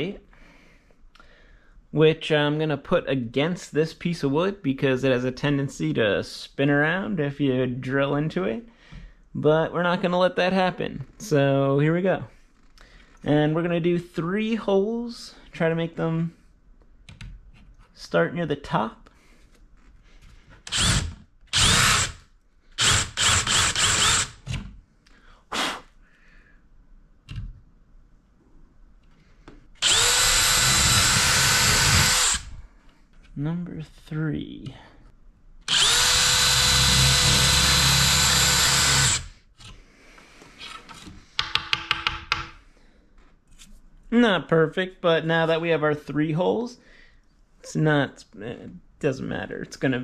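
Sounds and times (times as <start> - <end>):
power drill boring into plastic: 20.7 - 22.2, 22.8 - 24.4, 29.8 - 32.5, 35.7 - 39.3.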